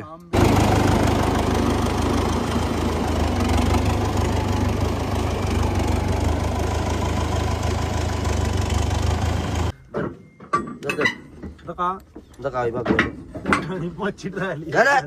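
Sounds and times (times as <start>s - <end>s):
diesel tractor engine idling: 0.3s - 9.8s.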